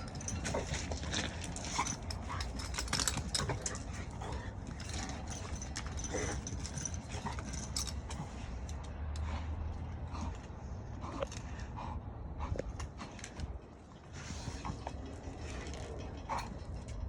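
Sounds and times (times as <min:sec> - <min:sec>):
puppies scuffling: 0:00.0 - 0:08.2.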